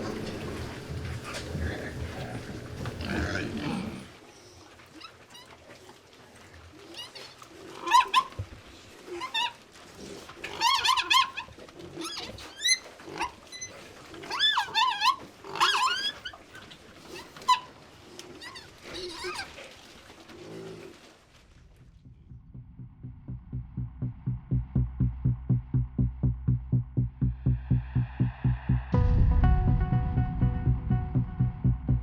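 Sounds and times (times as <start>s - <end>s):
pigs squealing: 0.0s - 4.2s, 6.8s - 21.1s
pigs grunting: 0.0s - 4.5s, 5.7s - 21.2s.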